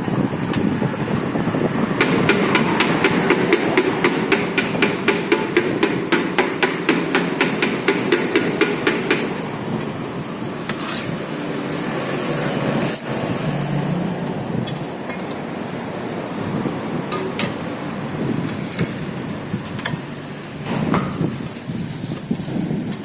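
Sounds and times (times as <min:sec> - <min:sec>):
scraping and rubbing: 0:10.7 - 0:16.2, 0:17.8 - 0:23.0.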